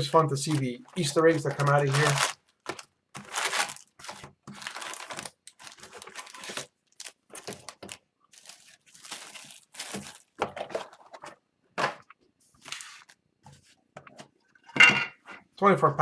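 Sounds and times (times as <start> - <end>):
plastic wrap crinkling and ripping: 0.0 - 11.2.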